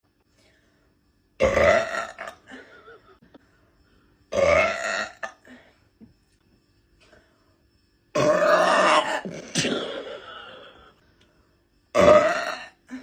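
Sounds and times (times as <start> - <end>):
woman belching loudly: 1.4 - 2.4, 4.3 - 5.4, 8.2 - 9.6, 12.0 - 12.8.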